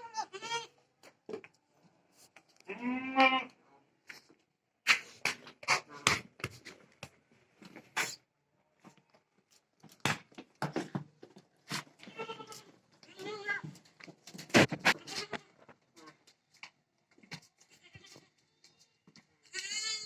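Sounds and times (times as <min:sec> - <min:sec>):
goats bleating: 0:00.0 - 0:00.7, 0:02.7 - 0:03.6, 0:12.0 - 0:13.7, 0:19.4 - 0:20.0
sharp knocks and clatter: 0:13.7 - 0:15.3.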